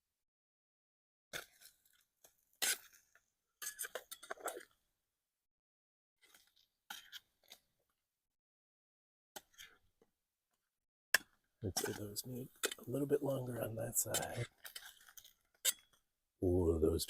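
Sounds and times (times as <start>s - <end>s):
metal utensil scraping frying pan: 11.7s - 16.0s.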